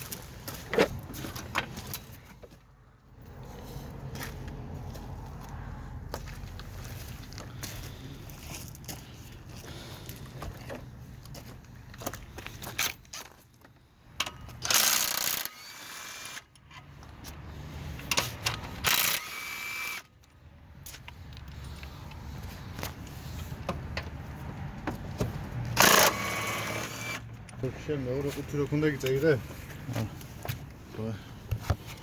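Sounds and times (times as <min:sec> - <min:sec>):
power tool whining: 0:14.6 - 0:16.5, 0:18.8 - 0:20.1, 0:25.8 - 0:27.3.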